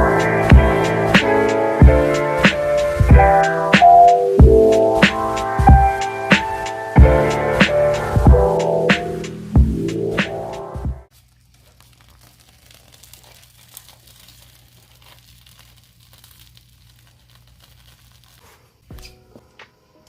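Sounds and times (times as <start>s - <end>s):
music: 0.0s - 11.1s, 18.9s - 20.0s
rustling and crinkling: 11.1s - 19.8s.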